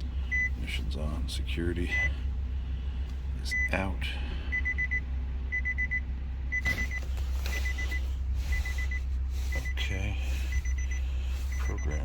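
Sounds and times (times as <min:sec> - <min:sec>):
high electronic warning beeps: 0:01.9 - 0:02.1, 0:04.5 - 0:12.0.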